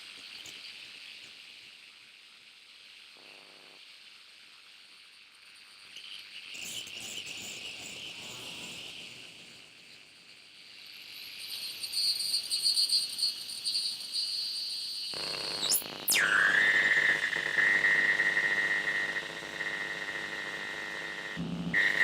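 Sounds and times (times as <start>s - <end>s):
shrill synthesizer drone: 15.6s - 22.0s.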